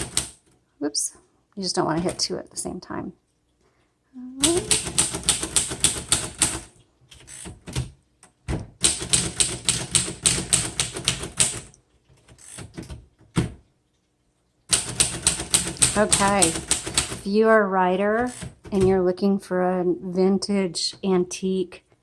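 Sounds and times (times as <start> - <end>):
manual typewriter key clacks: 0.0 - 0.4, 4.4 - 8.0, 8.8 - 13.4, 14.7 - 17.2.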